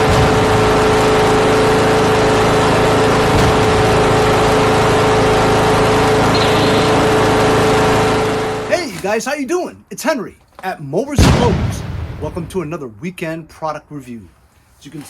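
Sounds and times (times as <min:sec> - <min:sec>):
engine running steadily: 0:00.0 - 0:08.8.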